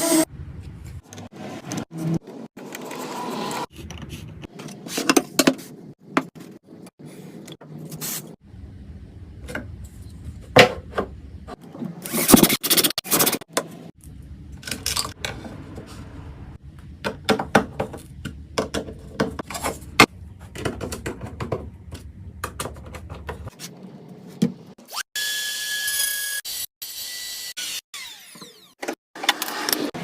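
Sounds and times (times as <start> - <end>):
low hum: 8.4 - 11.6, 14.0 - 17.1.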